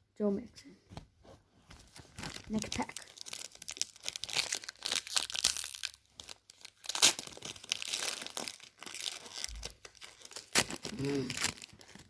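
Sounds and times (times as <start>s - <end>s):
foil pack tearing and crinkling: 2.2s - 12.0s.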